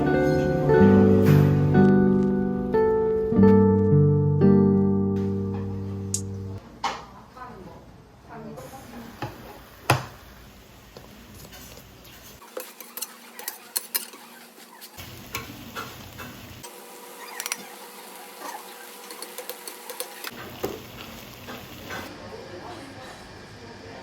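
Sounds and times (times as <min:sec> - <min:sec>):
utensils and dishes clinking: 0:12.4 - 0:22.1.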